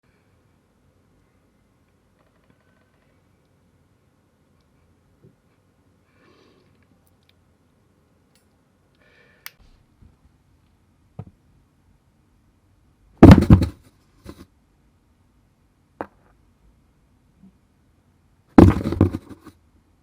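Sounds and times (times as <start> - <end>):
cat landing thump: 13.2 - 14.4, 18.6 - 19.5.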